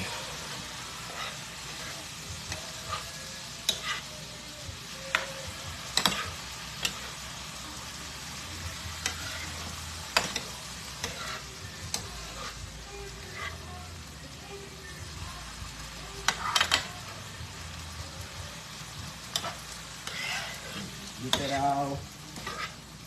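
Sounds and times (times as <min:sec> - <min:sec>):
utensil scraping a pan: 0:00.0 - 0:04.2, 0:09.0 - 0:13.7, 0:19.3 - 0:22.9
fried rice sizzling in a pan: 0:00.0 - 0:23.0.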